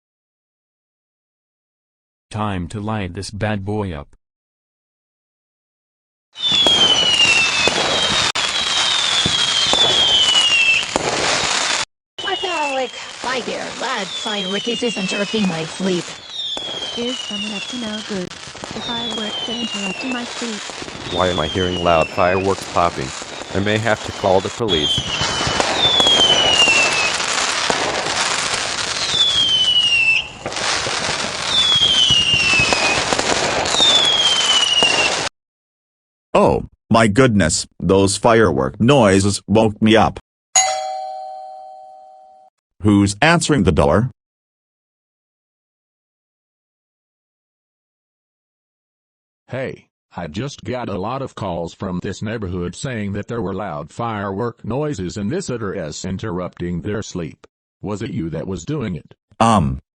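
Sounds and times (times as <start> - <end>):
fireworks crackling and popping: 6.4 - 35.3
fireworks whistles sliding down: 6.4 - 35.3.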